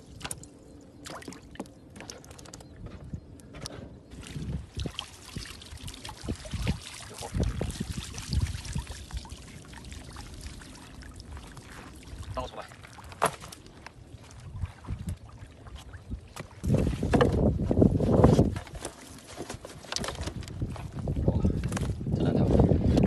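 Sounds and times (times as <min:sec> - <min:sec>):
water splashing and trickling: 0:00.0 - 0:03.1, 0:04.1 - 0:21.4
heavy low splashes and sloshing: 0:04.1 - 0:17.7.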